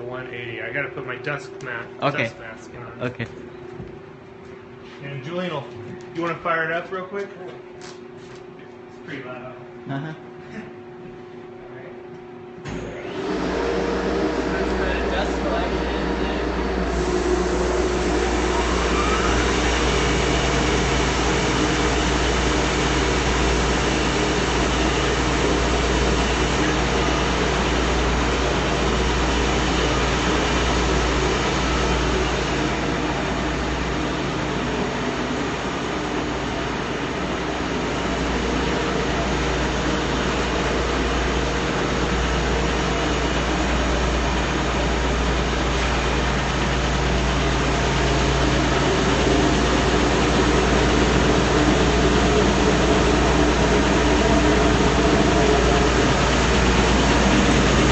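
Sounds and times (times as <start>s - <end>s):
belt sander whining and humming: 12.7s - 57.9s.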